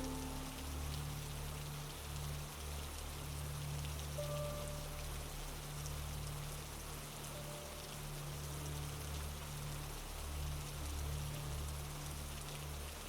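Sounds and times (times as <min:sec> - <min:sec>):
steady rain falling: 0:00.0 - 0:13.0.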